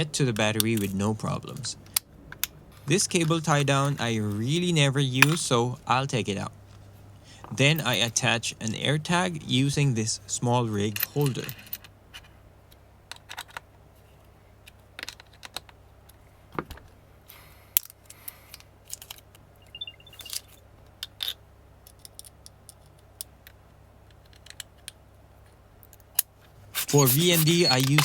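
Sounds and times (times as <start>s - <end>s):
faint high chirp: 19.6s - 20.5s, 26.8s - 28.0s
clicks and taps of parts handled: 21.1s - 25.0s.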